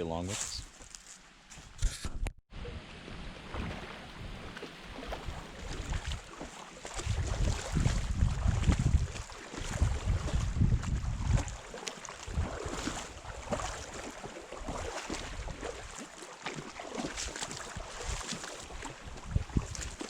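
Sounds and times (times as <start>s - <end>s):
wind buffeting microphone: 3.6s - 14.0s, 17.7s - 20.0s.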